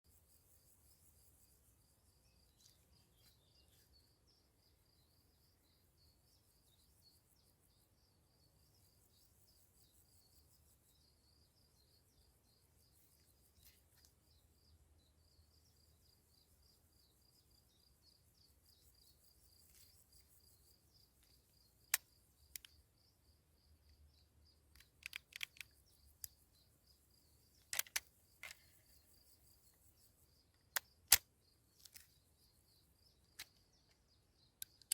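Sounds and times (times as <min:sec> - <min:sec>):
faint high chirping: 0:00.1 - 0:34.9
sharp clicks: 0:21.9 - 0:22.8, 0:24.7 - 0:26.4, 0:27.6 - 0:28.7, 0:30.5 - 0:32.1, 0:33.3 - 0:34.9.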